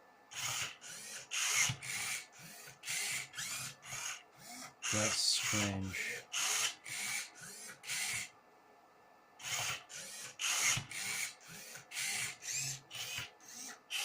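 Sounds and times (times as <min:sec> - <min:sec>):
robot motors whirring: 0:00.3 - 0:08.3, 0:09.4 - 0:14.0.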